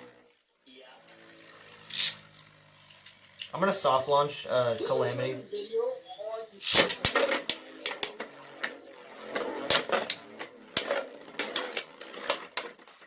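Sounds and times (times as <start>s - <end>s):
whir of spinning tops: 0.0s - 13.0s
spinning tops clacking: 1.1s - 3.6s, 6.6s - 13.0s.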